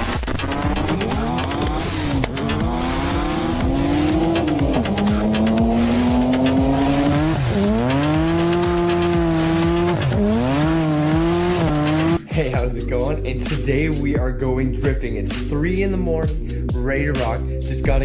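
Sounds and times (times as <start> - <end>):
car engine revving hard: 0.0 - 12.2.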